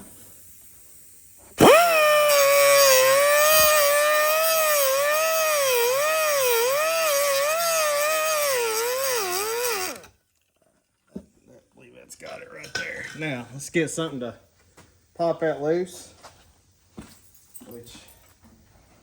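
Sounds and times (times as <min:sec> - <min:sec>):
cutoff wheel grinding metal: 0:01.6 - 0:10.1.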